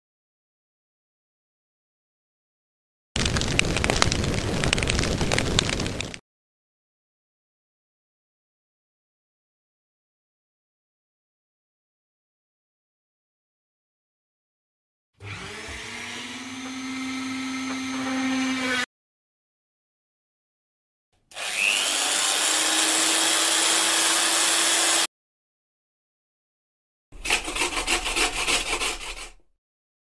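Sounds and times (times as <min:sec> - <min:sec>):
power tool motor running: 0:15.2 - 0:18.9, 0:21.3 - 0:25.1
rapid rasping strokes: 0:27.2 - 0:29.5.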